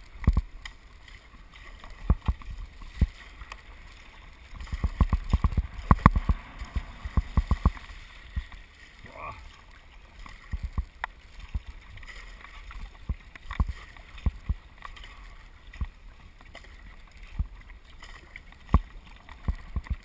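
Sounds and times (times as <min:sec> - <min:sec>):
paddle strokes in water: 0:00.0 - 0:20.0
low knocks and thumps: 0:04.5 - 0:08.6.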